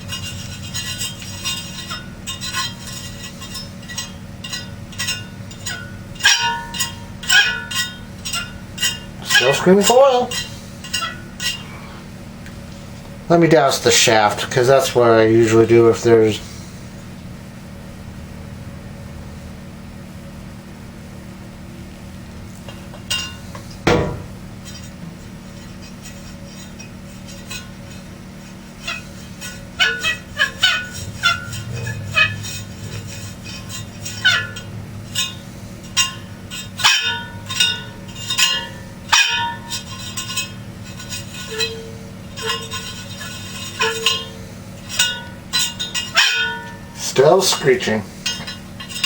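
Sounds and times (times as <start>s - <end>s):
dry bearings screaming: 0.0s - 12.2s, 24.6s - 49.0s
electric fan motor humming: 0.0s - 49.0s
metallic clink: 22.9s - 49.0s
sharp knock: 23.8s - 24.4s.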